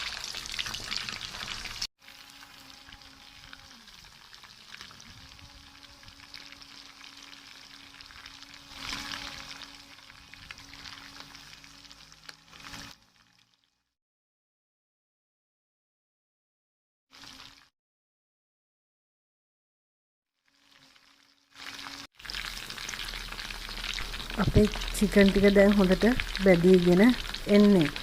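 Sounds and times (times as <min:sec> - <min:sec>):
chicken deep-frying in oil: 0:00.0 - 0:13.9, 0:17.1 - 0:17.7, 0:20.4 - 0:28.0.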